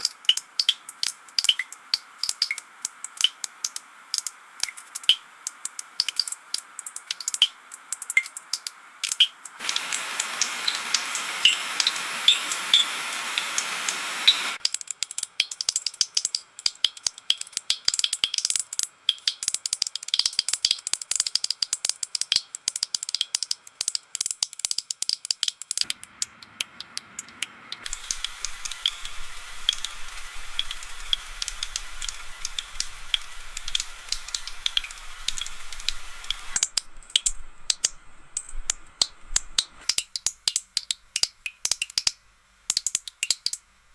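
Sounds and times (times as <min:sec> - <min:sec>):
rain hissing: 0:09.6 - 0:14.6, 0:25.9 - 0:40.0
raindrops tapping: 0:14.6 - 0:43.7.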